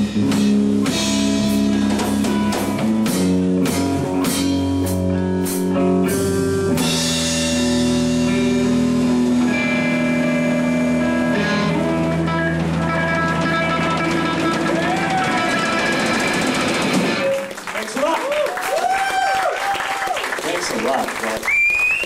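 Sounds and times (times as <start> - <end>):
rock music with guitar and drums: 0.0 - 17.4
guitar chord ringing: 4.6 - 14.7.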